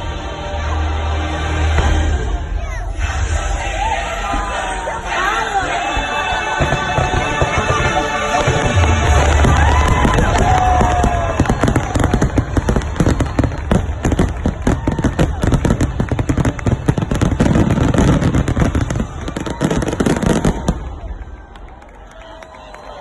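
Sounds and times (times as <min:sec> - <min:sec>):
fireworks banging and crackling: 0:05.8 - 0:22.0.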